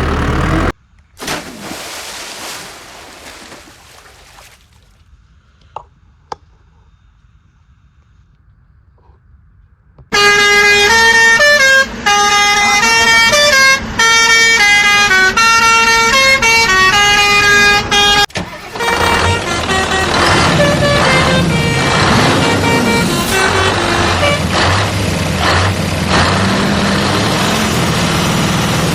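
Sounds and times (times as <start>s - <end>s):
vehicle with wavering low tone: 0.0s - 0.8s
musical vehicle horn tune: 10.1s - 24.9s.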